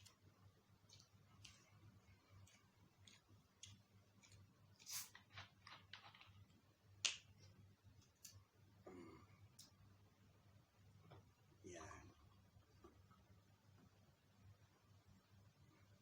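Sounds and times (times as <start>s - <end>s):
chewing and lip smacks: 0.0s - 5.2s.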